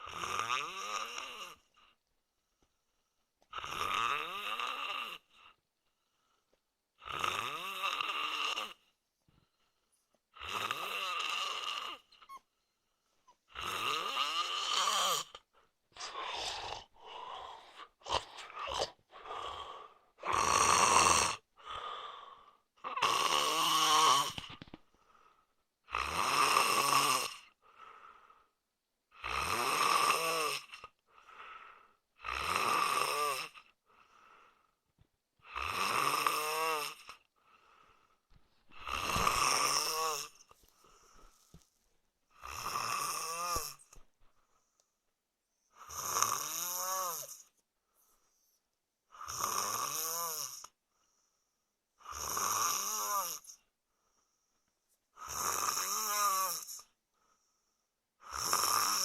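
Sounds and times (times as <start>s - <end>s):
man snoring: 0.0s - 1.8s, 3.5s - 5.6s, 7.0s - 8.9s, 10.3s - 12.4s, 13.5s - 24.7s, 25.8s - 28.2s, 29.1s - 34.5s, 35.4s - 38.1s, 38.7s - 41.3s, 42.3s - 44.0s, 45.7s - 47.6s, 49.1s - 50.8s, 52.0s - 53.6s, 55.2s - 57.0s, 58.2s - 59.0s
quiet breath: 1.1s - 3.6s, 5.2s - 7.0s, 8.8s - 10.4s, 15.1s - 20.3s, 21.4s - 23.0s, 24.3s - 25.9s, 27.4s - 28.7s, 30.7s - 32.2s, 33.5s - 35.1s, 37.0s - 46.0s, 47.4s - 48.8s, 50.6s - 52.2s, 53.4s - 55.3s, 56.6s - 58.4s.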